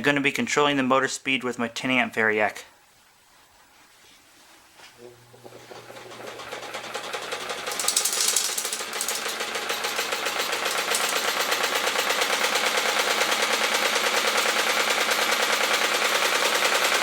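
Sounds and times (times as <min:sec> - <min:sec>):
sewing machine mechanism clattering: 0:05.7 - 0:17.0.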